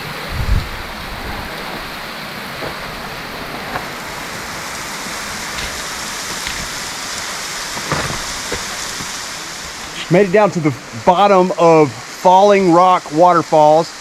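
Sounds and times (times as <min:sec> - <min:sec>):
waterfall rushing: 0:00.0 - 0:14.0
faint knocks: 0:05.6 - 0:10.0.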